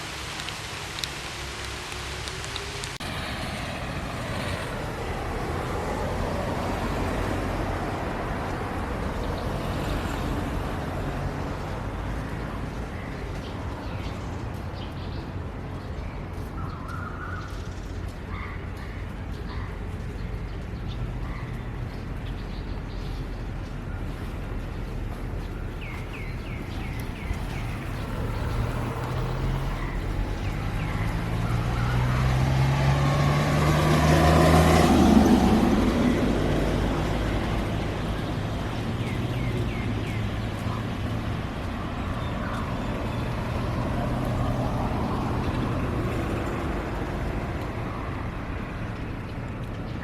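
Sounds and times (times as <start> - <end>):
rain hissing: 0.0 - 7.4, 24.0 - 42.0
vehicle engine driving past: 26.9 - 38.8.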